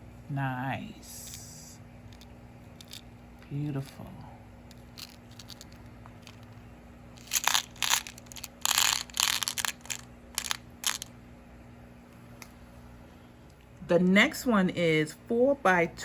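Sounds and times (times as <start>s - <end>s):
plastic packaging crinkling: 4.7s - 6.6s, 7.2s - 11.1s.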